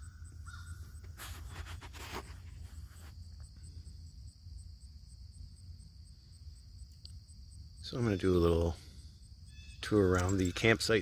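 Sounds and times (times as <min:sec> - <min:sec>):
insect chirping: 0:00.0 - 0:11.0
steady high insect trill: 0:00.0 - 0:11.0
short rustle: 0:01.1 - 0:03.2.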